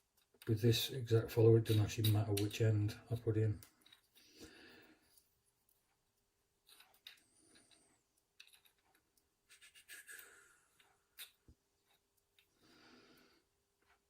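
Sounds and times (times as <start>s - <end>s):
lock parts clicking and scraping: 1.6s - 2.6s, 3.5s - 4.3s, 6.6s - 12.5s.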